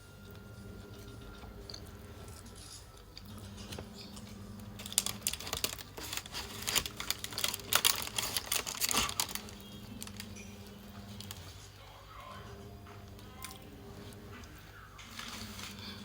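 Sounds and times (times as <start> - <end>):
eating with crisp crunches: 0.2 - 16.0.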